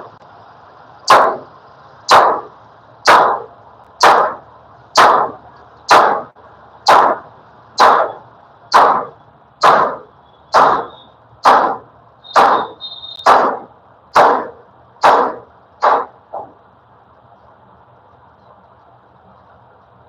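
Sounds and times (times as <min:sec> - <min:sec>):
hammer blows: 0:01.1 - 0:01.5, 0:02.1 - 0:16.6.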